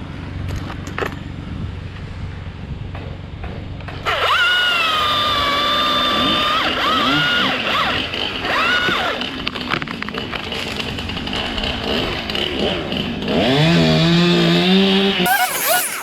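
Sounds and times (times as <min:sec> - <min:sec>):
battery chainsaw whining: 0:15.3 - 0:16.0.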